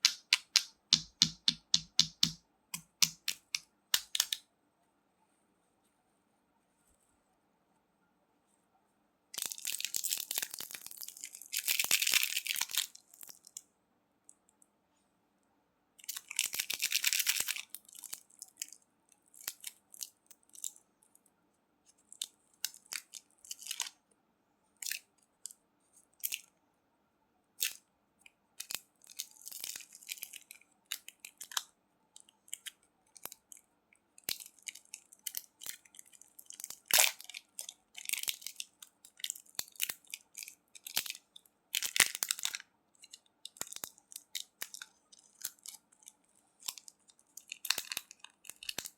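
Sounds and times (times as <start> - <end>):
candy being crunched: 9.4 - 13.6, 16.0 - 20.7, 28.6 - 33.6, 34.2 - 48.9.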